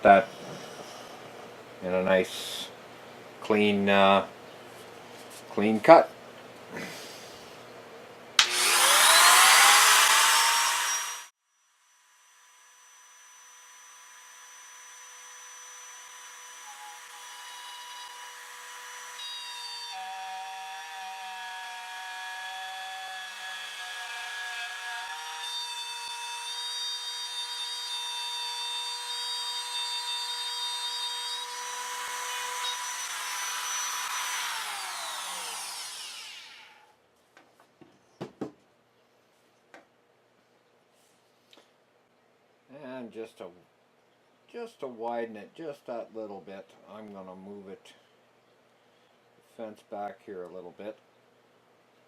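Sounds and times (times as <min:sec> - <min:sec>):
router cutting wood: 0:08.4 - 0:11.3, 0:11.9 - 0:36.8
router winding down: 0:08.4 - 0:11.3, 0:30.8 - 0:36.8.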